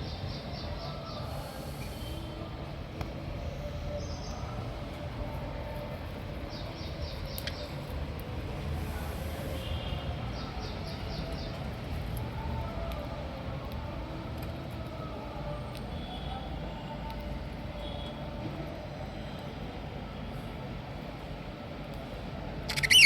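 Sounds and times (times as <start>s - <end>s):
parrots chirping: 22.7s - 23.0s.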